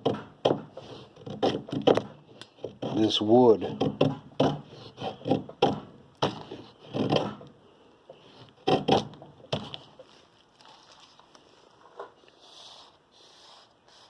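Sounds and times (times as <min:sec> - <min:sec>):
knife scraping wood: 0:00.7 - 0:05.6, 0:06.2 - 0:07.5, 0:08.1 - 0:10.8, 0:11.8 - 0:14.0.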